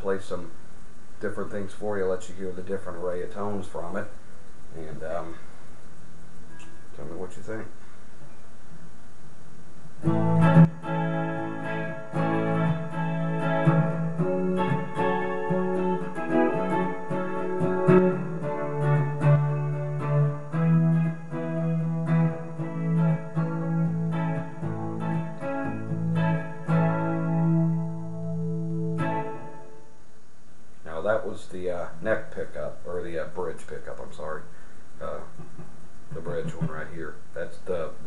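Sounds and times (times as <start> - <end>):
electric guitar playing: 10.0 - 30.0.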